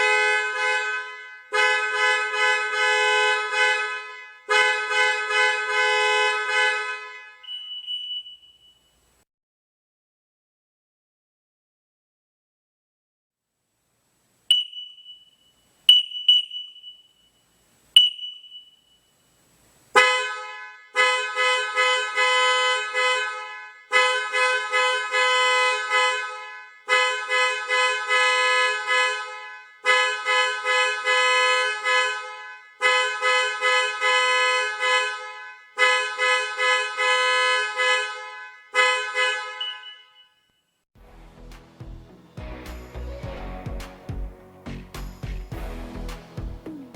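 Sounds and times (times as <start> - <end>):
car alarm honking blare: 0.0 - 9.0, 14.5 - 19.2, 20.0 - 40.8
car alarm chirps: 5.3 - 9.2, 14.5 - 19.4, 20.0 - 40.8.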